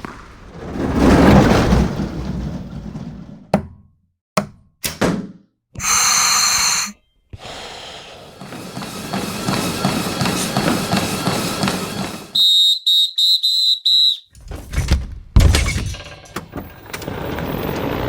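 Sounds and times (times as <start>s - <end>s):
noisy activity: 6.5s - 12.4s
sports whistle blasts: 12.3s - 14.3s.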